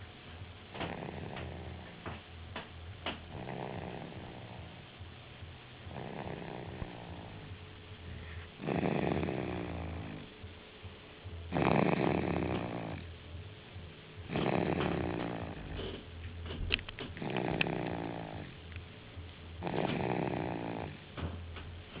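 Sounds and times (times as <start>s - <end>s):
loud snoring: 0.7s - 2.1s, 3.2s - 4.9s, 5.8s - 7.5s, 8.6s - 10.3s, 11.5s - 13.1s, 14.2s - 16.0s, 17.1s - 18.6s, 19.6s - 21.1s.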